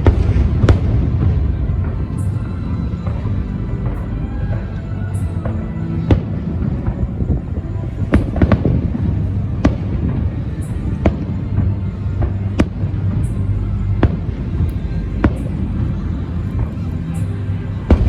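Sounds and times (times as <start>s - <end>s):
fireworks bangs: 0.0s - 13.3s
low rumble: 0.0s - 18.0s
music: 0.0s - 18.0s.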